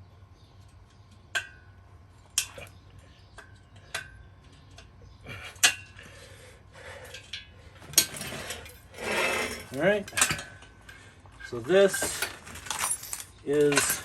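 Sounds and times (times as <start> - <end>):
metallic clinks and knocks: 7.0 - 14.0.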